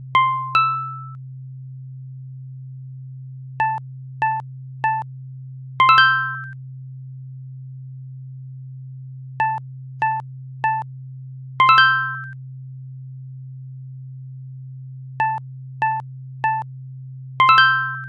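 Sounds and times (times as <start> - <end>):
bright two-note chime: 0.2 - 1.1, 5.8 - 6.5, 11.6 - 12.3, 17.4 - 18.0
short electronic beeps: 3.6 - 5.0, 9.4 - 10.8, 15.2 - 16.6.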